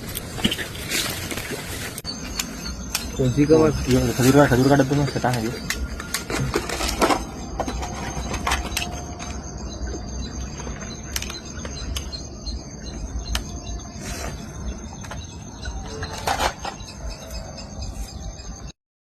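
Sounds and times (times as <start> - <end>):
high-pitched chirring: 2.0 - 18.7
sharp clicks: 13.2 - 13.6.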